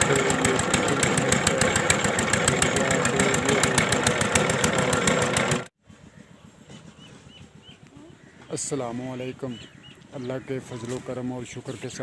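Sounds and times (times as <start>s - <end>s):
diesel engine knocking steadily: 0.0s - 5.7s.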